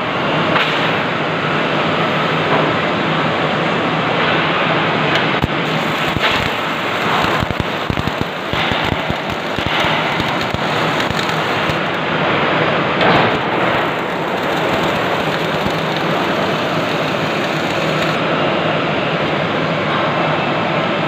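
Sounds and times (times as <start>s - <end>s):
welding arc crackling: 5.2s - 18.3s.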